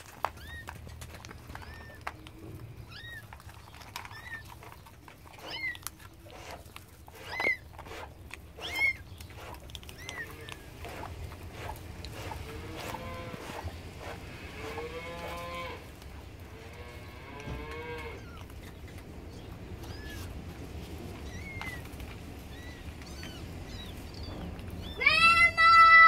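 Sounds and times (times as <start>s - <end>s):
kittens mewing: 19.7s - 20.5s, 21.2s - 25.4s.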